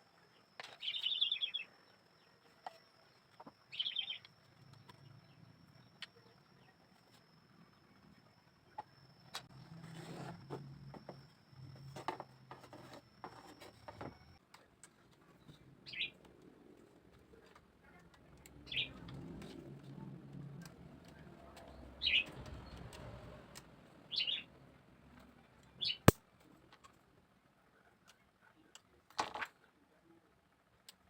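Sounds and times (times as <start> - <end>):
small bird chirping trills: 0.1 - 9.5.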